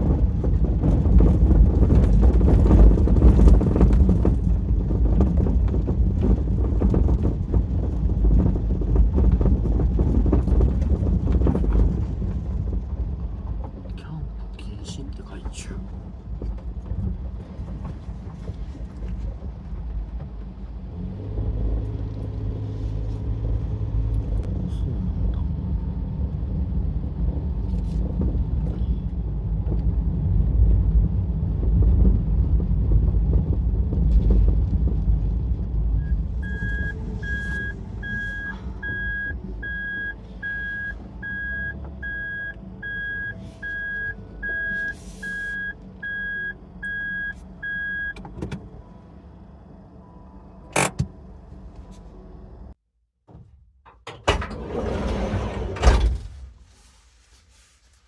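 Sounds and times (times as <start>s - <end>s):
van engine rumbling: 0.0s - 52.8s, 53.4s - 58.0s
reversing warning beep: 36.0s - 48.2s.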